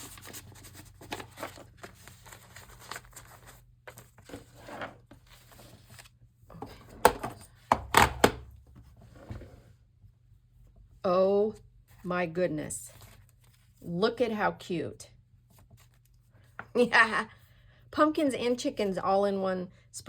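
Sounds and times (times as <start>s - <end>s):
paper rustling and crinkling: 0.0s - 6.2s, 12.9s - 13.9s, 15.5s - 16.2s.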